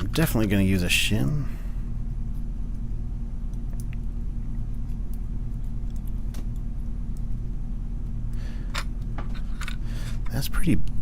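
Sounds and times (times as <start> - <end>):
low electrical hum: 0.0 - 11.0
small metal parts clicking: 8.7 - 10.3.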